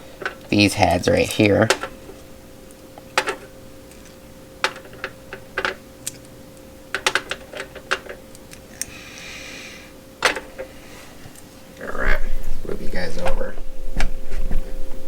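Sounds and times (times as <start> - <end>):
faint steady hum: 0.0 - 15.0
metal bolts clinking: 0.1 - 2.2, 3.0 - 6.3, 6.9 - 8.5.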